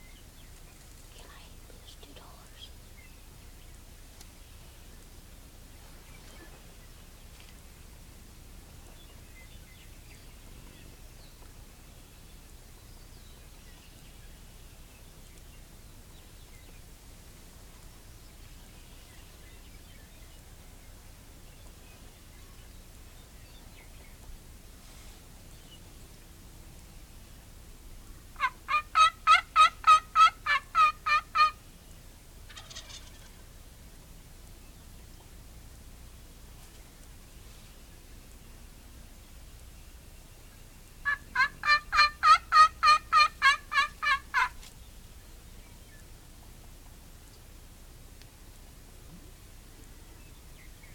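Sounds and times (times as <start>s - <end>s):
low outdoor rumble: 0.0s - 50.9s
turkey yelps: 28.4s - 31.6s, 32.5s - 33.4s, 41.0s - 44.6s.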